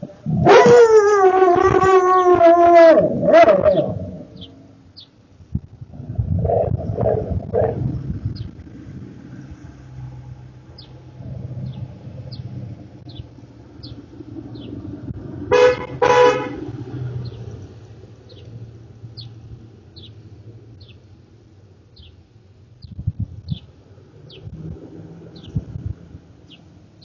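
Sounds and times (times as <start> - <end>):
car horn honking: 15.5 - 16.6.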